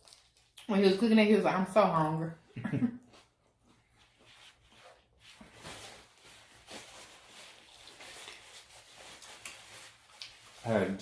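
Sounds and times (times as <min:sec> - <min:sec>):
chewing and mouth sounds: 0:00.0 - 0:00.7, 0:09.3 - 0:10.5.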